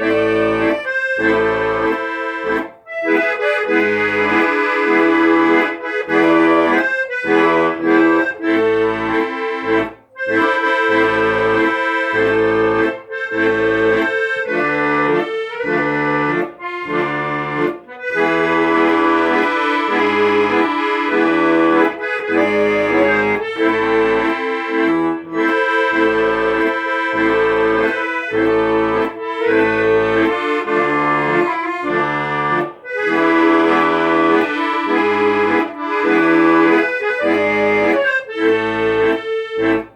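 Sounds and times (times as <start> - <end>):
accordion playing a tune: 0.0 - 39.9.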